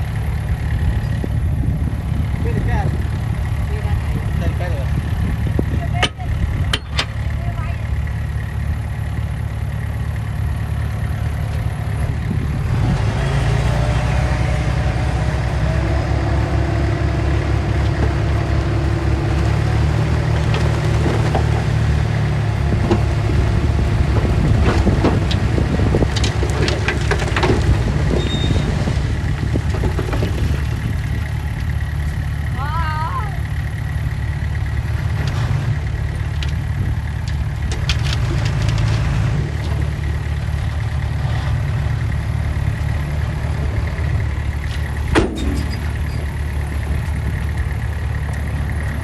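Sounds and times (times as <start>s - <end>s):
diesel engine running: 0.0s - 49.0s
metallic clanks: 44.7s - 46.5s.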